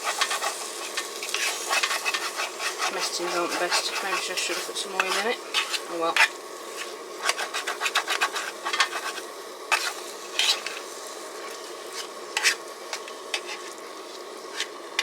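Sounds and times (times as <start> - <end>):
spoon scraping a mess tin: 0.0 - 10.8, 11.9 - 13.7
food sizzling: 0.0 - 15.0
gas stove hissing: 0.0 - 15.0.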